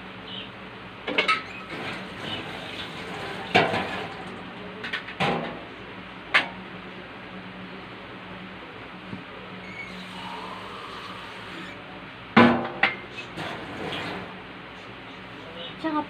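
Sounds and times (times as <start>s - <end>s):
steady low hum: 0.0s - 16.0s
cookware and utensils clinking: 1.1s - 5.6s.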